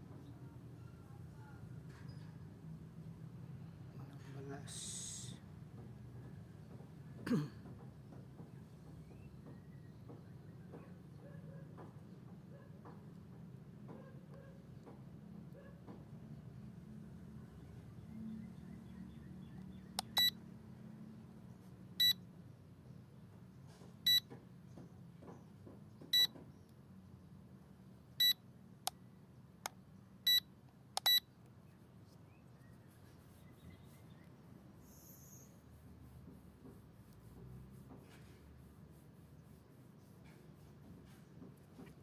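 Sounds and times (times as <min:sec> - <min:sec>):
short electronic beeps: 0:20.0 - 0:20.4, 0:22.0 - 0:22.2, 0:28.2 - 0:28.4, 0:30.3 - 0:31.3.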